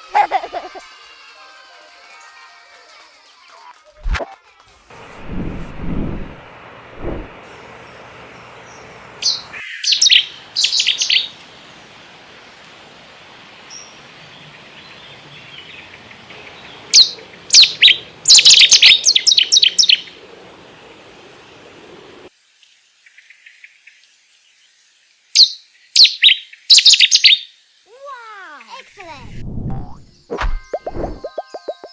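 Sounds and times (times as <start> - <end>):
warbler singing: 8.6 - 12.0, 13.3 - 22.3.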